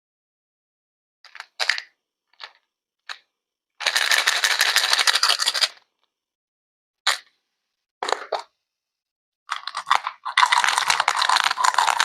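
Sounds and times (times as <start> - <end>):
small hard objects rattling: 3.8 - 5.7, 9.5 - 12.0.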